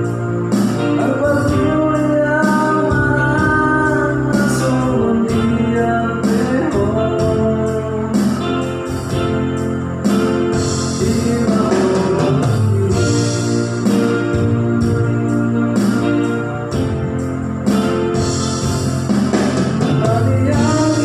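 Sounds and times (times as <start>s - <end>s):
person singing: 0.0s - 9.1s, 10.5s - 16.0s, 19.7s - 21.0s
electronic keyboard accompaniment: 0.0s - 21.0s.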